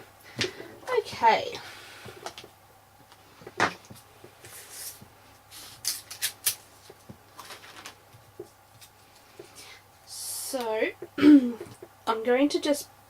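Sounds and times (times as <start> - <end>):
paper rustling: 4.4 - 9.5.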